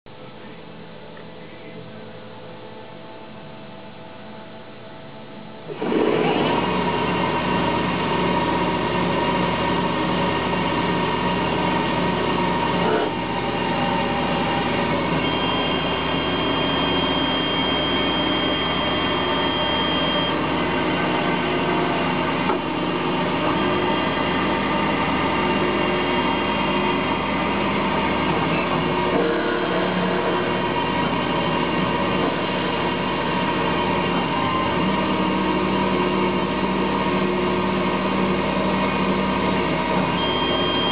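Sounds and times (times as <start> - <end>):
lathe mechanical whine: 1.4 - 40.9
higher steady tone: 13.2 - 28.0, 40.2 - 40.9.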